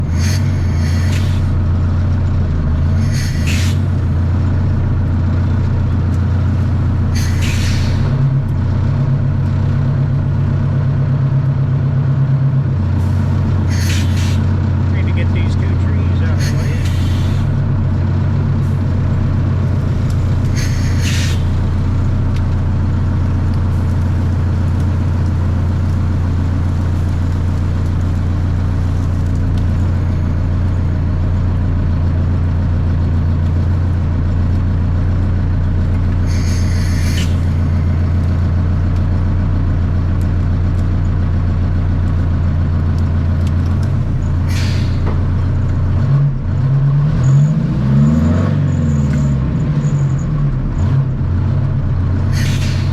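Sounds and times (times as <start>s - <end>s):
diesel engine running and revving: 0.0s - 52.9s
short hisses: 0.1s - 1.5s, 3.0s - 3.8s, 7.2s - 8.1s, 13.7s - 14.4s, 16.4s - 17.5s, 20.5s - 21.6s, 36.3s - 37.9s, 44.5s - 45.1s, 52.3s - 52.9s.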